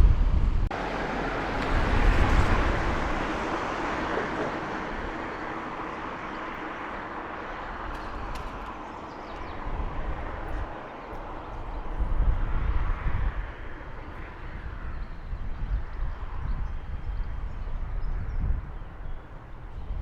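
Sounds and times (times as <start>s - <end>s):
vehicle rushing sound: 0.0s - 6.3s
low vehicle rumbling: 0.0s - 20.0s.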